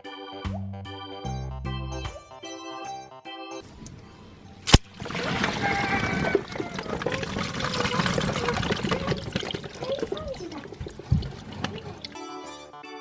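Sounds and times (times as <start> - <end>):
water balloon bursting: 4.7 - 12.2
water beads pouring and spilling: 4.7 - 12.2.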